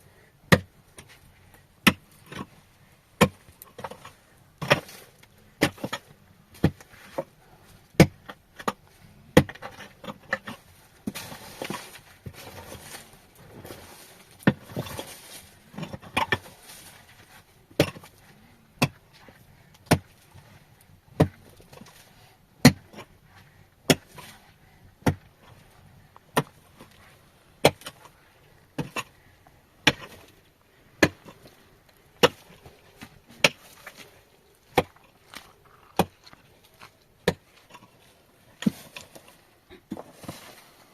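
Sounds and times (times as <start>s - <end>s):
rustling: 8.9s - 22.4s, 23.0s - 40.9s.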